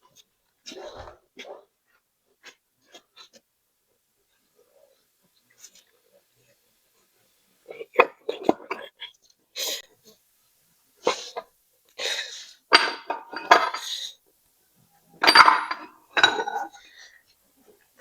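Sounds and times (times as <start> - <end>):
metal parts clinking and clattering: 12.7 - 13.9, 15.2 - 16.7.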